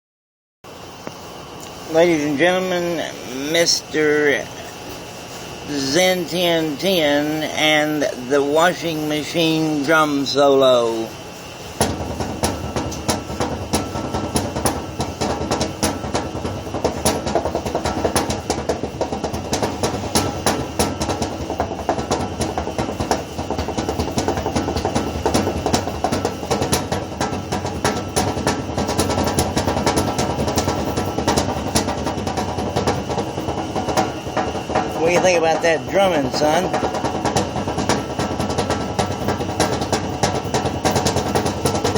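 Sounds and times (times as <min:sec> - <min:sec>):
fingers drumming on metal cabinet: 0:11.8 - 0:41.9.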